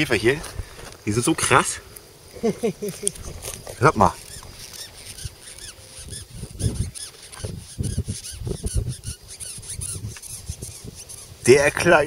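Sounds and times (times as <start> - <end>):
beetle squeaking: 2.5 - 12.0.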